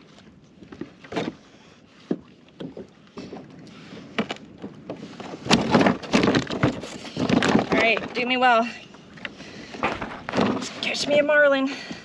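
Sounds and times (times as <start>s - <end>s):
fishing gear knocks and rustles: 4.1s - 8.3s, 9.2s - 11.3s.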